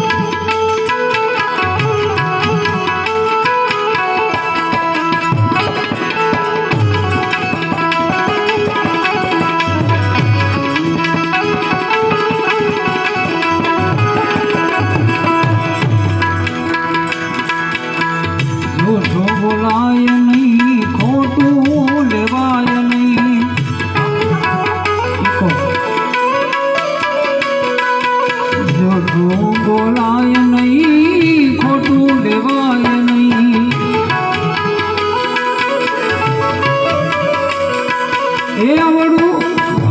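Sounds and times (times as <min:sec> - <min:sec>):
tabla rhythm: 0:00.0 - 0:39.9.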